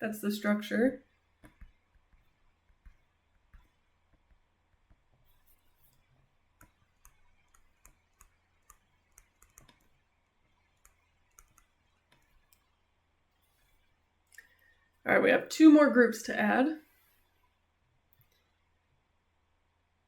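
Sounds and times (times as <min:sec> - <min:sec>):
faint clicks: 0:10.8 - 0:12.7.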